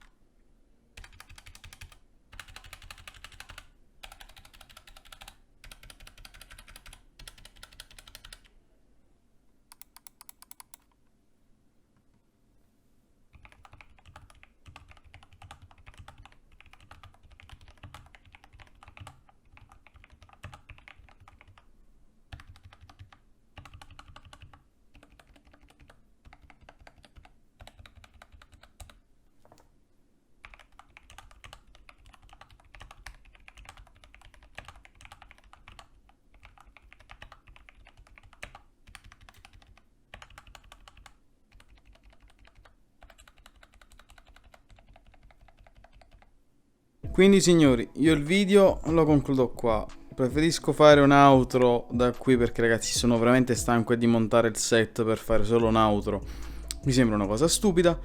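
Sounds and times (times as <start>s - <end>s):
mechanical keyboard typing: 1.0s - 8.5s, 9.7s - 11.0s, 13.4s - 21.7s, 22.3s - 29.0s, 30.4s - 46.3s.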